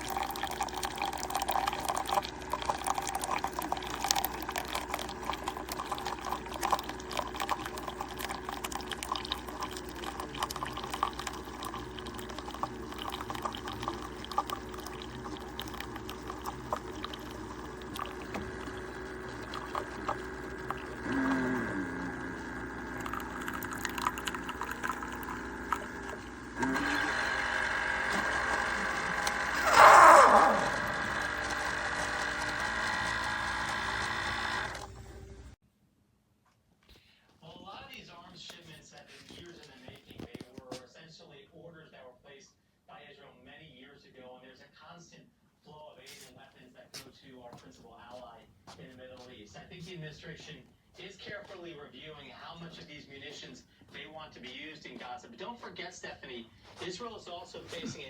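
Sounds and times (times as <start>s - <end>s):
coffee pouring into cup: 0.0s - 34.9s, 38.4s - 40.8s.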